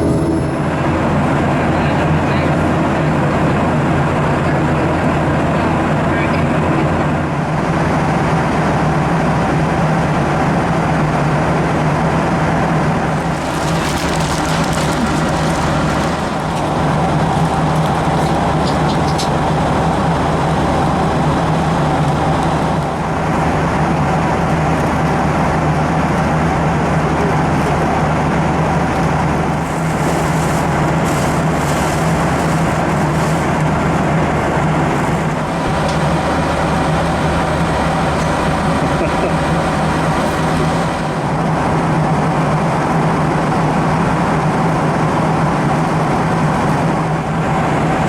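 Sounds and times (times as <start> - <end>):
airliner cabin engine drone: 0.0 - 48.0.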